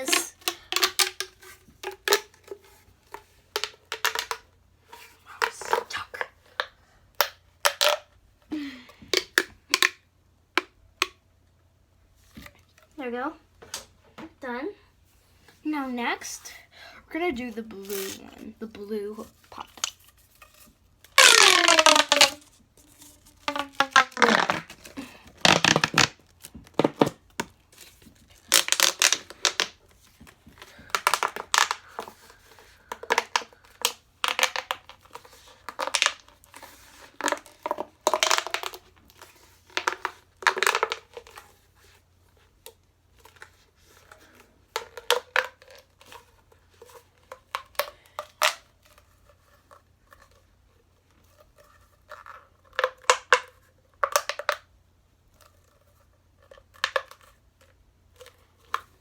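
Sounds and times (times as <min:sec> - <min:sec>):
plastic pop tube popping: 0:00.0 - 0:02.5, 0:03.1 - 0:04.5, 0:06.6 - 0:08.1, 0:09.0 - 0:11.2, 0:21.0 - 0:27.6, 0:28.4 - 0:29.8, 0:30.5 - 0:36.3, 0:37.1 - 0:38.8, 0:39.7 - 0:41.4, 0:52.7 - 0:54.6.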